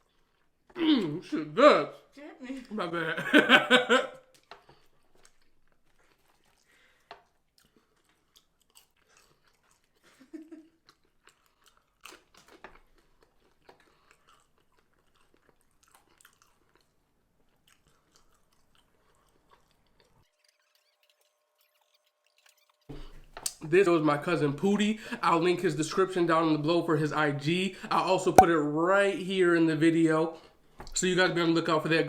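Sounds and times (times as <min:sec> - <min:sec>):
person chewing and crunching food: 0:00.0 - 0:01.2, 0:04.2 - 0:23.6.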